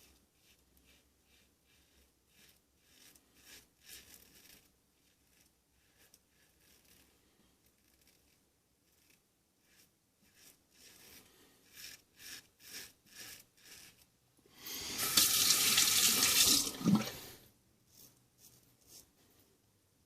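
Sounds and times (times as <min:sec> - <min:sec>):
razor scraping stubble: 0:00.5 - 0:14.1
tap running into a sink: 0:15.0 - 0:17.2.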